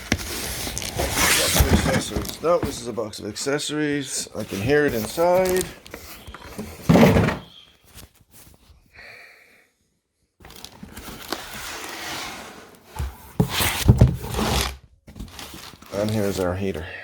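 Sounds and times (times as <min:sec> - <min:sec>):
cardboard rustling and sliding: 0:00.0 - 0:03.0, 0:04.4 - 0:08.6, 0:10.4 - 0:16.5
cardboard box thump: 0:06.6 - 0:07.5, 0:13.0 - 0:15.4.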